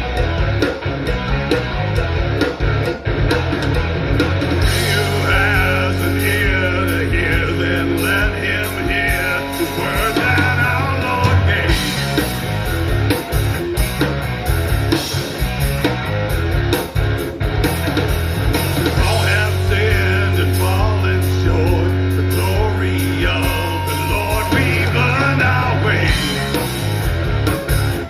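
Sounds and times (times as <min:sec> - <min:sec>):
rock band playing: 0:00.0 - 0:28.0
person singing: 0:04.7 - 0:12.0, 0:19.0 - 0:26.6.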